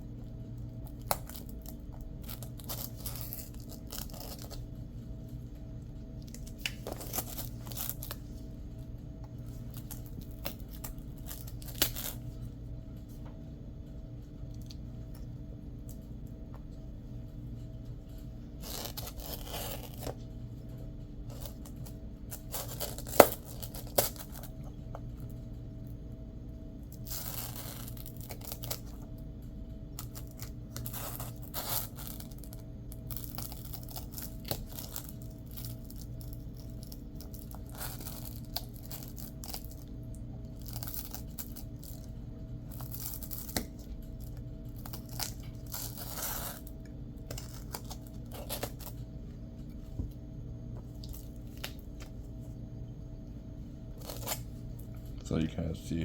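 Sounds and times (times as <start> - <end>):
velcro scratchy rasps: 18.6 - 20.1, 30.0 - 32.5, 45.0 - 46.7.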